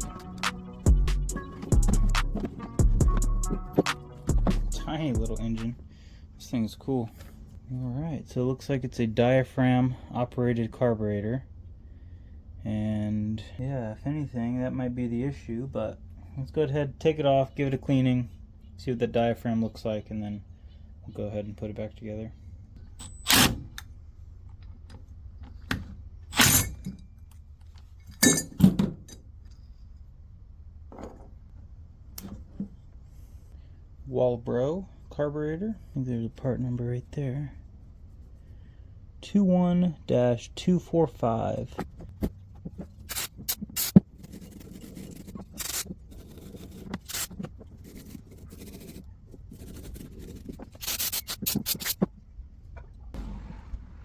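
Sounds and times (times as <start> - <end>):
rubbing and scraping: 0.0 - 5.8, 37.5 - 38.6, 41.7 - 52.2
metal parts clinking: 26.3 - 27.1, 28.0 - 29.3, 43.1 - 45.9, 50.8 - 52.0.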